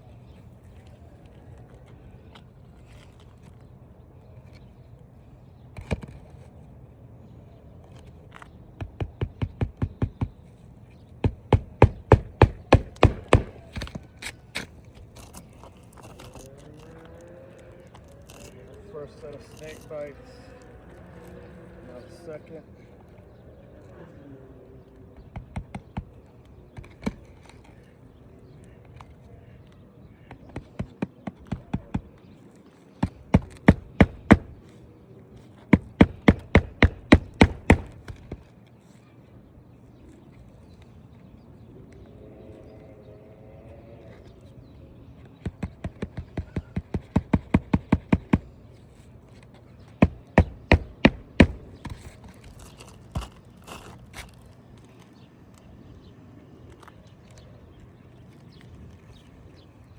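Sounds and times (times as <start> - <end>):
hammer striking roofing nails: 8.8 - 10.4, 11.2 - 14.0, 30.3 - 32.1, 33.0 - 34.6, 35.6 - 38.4, 45.4 - 48.6, 49.9 - 53.3.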